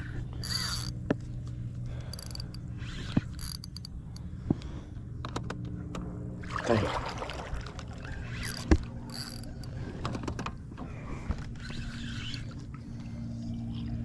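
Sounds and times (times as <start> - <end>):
fishing reel gear whirring: 0.0 - 4.4, 7.4 - 14.0
steady low hum: 0.0 - 14.0
small reel clicks: 0.3 - 4.3, 8.2 - 10.5, 11.6 - 12.6.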